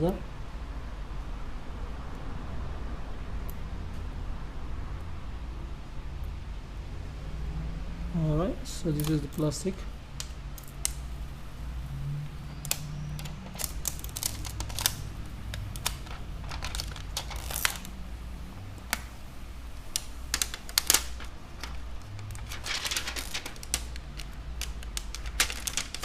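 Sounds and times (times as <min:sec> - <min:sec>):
plastic film crinkling: 0:08.7 - 0:11.1, 0:12.4 - 0:18.2, 0:18.8 - 0:26.0.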